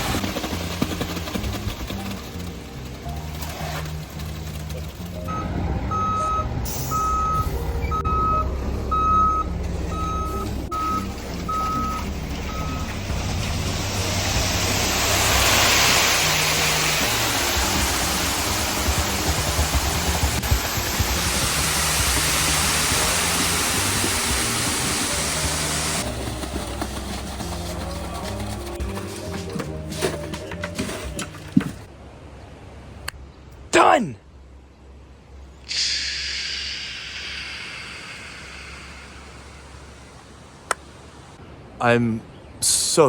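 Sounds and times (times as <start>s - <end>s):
low diesel engine rumble: 0.0s - 32.0s, 35.6s - 41.4s
truck reversing alarm beeping: 5.2s - 19.3s
broad rushing noise: 11.4s - 30.4s, 35.6s - 41.8s.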